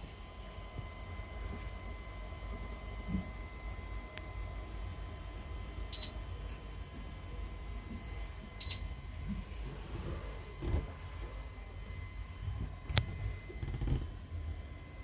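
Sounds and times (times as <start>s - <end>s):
faint high electrical whine: 0.0s - 15.0s
steady low hum: 0.0s - 15.0s
short electronic beeps: 8.6s - 8.8s.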